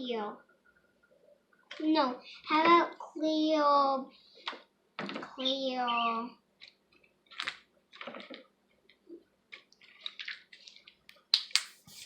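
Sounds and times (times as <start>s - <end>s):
wet slime squishing: 6.6s - 12.0s.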